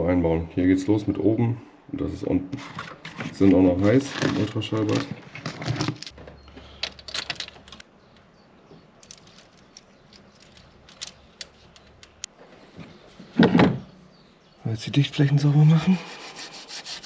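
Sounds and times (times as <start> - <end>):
metal engine parts clinking: 3.8 - 7.8, 8.8 - 12.3.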